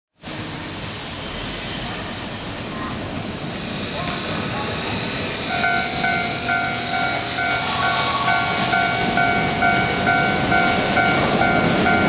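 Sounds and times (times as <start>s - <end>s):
train rumbling on rails: 0.2s - 12.0s
high wheel squeal: 3.4s - 12.0s.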